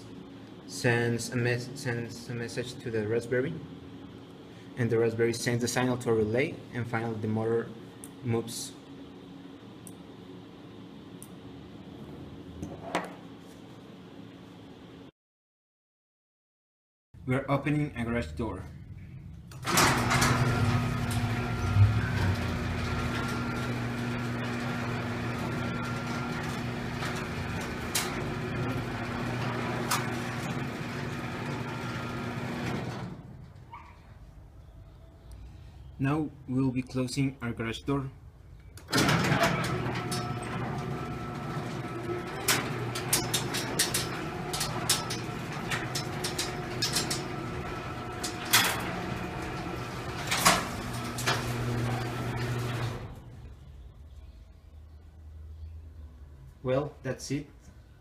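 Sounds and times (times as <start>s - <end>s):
garage door motor humming: 19.5s - 33.8s, 38.8s - 53.5s
electric motor humming: 19.8s - 33.0s.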